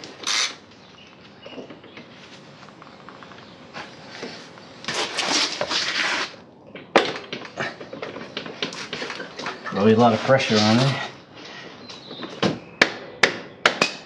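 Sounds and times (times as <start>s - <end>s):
hand tools scraping and clanking: 7.4s - 12.2s.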